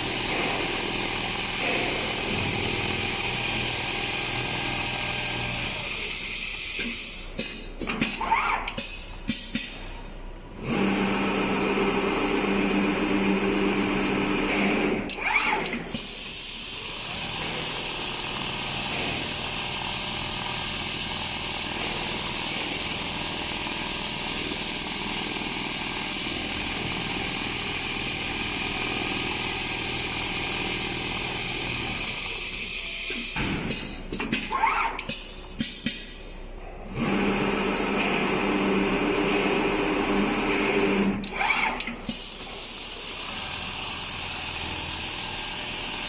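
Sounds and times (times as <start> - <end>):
sewing machine running: 0.0 - 5.9, 16.9 - 32.6, 43.0 - 46.0.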